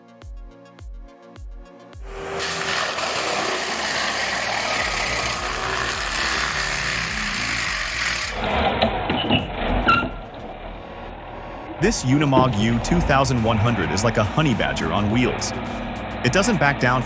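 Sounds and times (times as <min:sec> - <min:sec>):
loud machinery noise: 0:02.0 - 0:10.7, 0:12.2 - 0:17.0
low engine rumble: 0:08.4 - 0:17.0.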